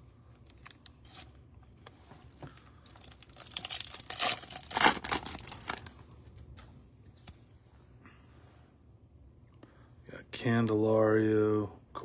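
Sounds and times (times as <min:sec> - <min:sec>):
wrapper tearing and crinkling: 0:02.9 - 0:06.0.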